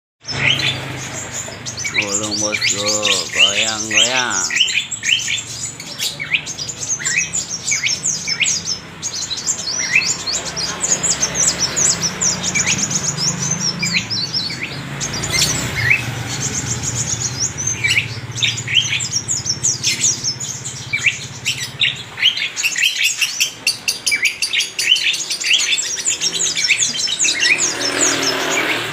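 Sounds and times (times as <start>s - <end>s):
bird twittering song: 0.2s - 28.9s.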